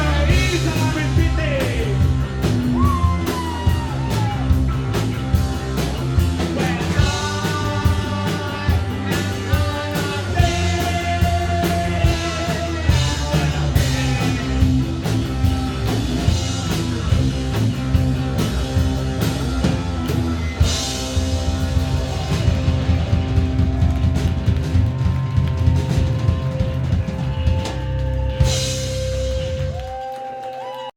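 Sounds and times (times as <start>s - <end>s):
person singing: 0.0s - 2.1s, 6.4s - 14.8s
punk rock band playing loudly: 0.0s - 30.0s
bass guitar: 0.0s - 30.3s
drums: 0.0s - 30.9s
electric guitar: 0.0s - 30.9s.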